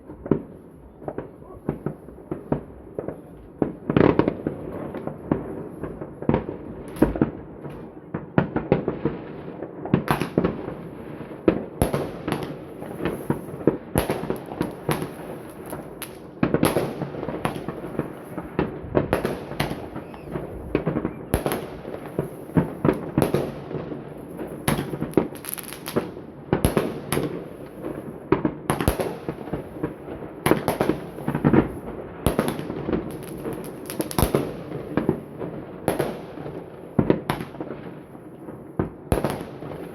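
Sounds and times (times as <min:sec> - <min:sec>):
fireworks bangs and cracks: 0:00.0 - 0:39.9.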